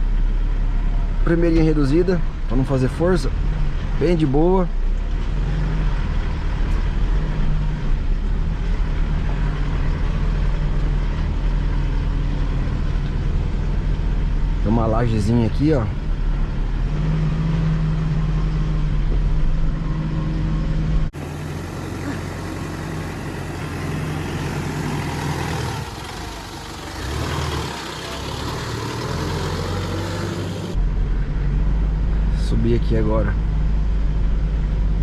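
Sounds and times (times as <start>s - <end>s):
hissy engine and tyre noise: 0.0s - 35.0s
pickup truck engine pulling slowly: 18.0s - 30.8s.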